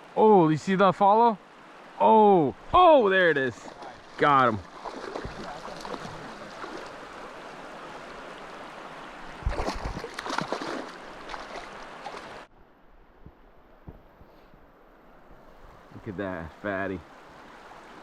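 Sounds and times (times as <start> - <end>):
river water rushing: 0.0 - 12.5, 15.0 - 18.0
fish splashing: 3.6 - 7.1, 9.4 - 12.5.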